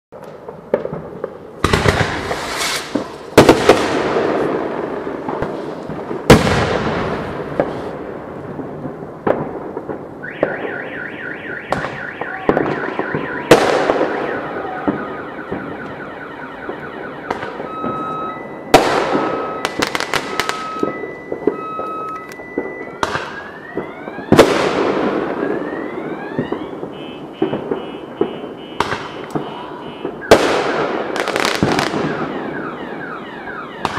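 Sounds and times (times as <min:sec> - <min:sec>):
fireworks booming: 0:00.1 - 0:33.9
car alarm: 0:10.2 - 0:33.9.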